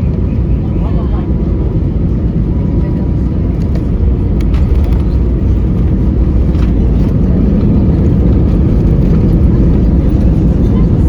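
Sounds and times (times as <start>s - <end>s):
airliner cabin low rumble: 0.0s - 11.0s.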